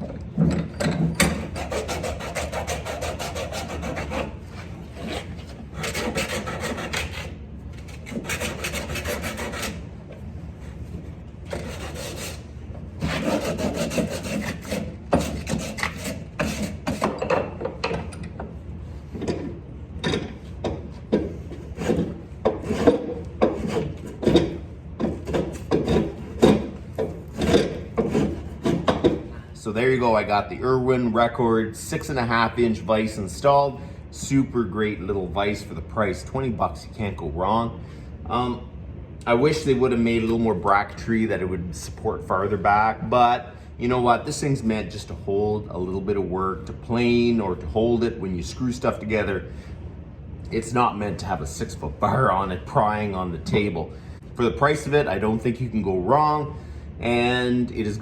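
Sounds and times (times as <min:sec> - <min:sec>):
hand filing metal scraping strokes: 0:01.1 - 0:09.9, 0:11.5 - 0:17.2, 0:21.4 - 0:29.2.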